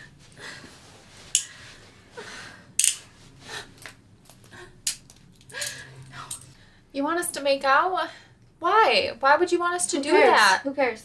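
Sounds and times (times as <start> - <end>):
soft breathing: 0.0 - 3.9.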